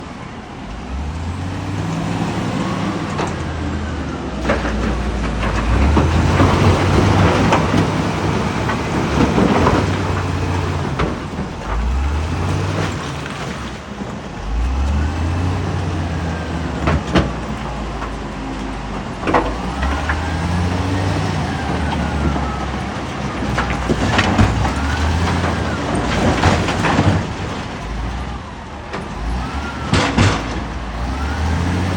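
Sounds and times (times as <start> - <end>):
diesel engine revving: 0.0 - 31.9.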